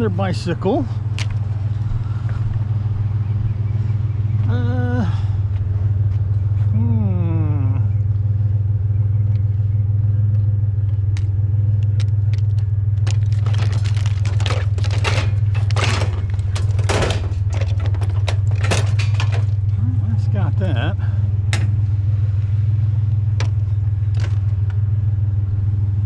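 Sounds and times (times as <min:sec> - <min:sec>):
truck engine humming: 0:00.0 - 0:26.0
scrap metal clattering: 0:13.1 - 0:19.8.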